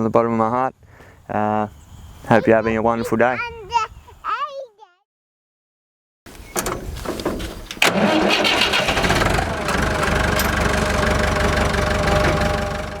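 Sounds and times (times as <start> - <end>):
engine cranking: 7.7 - 13.0
engine idling: 7.8 - 13.0.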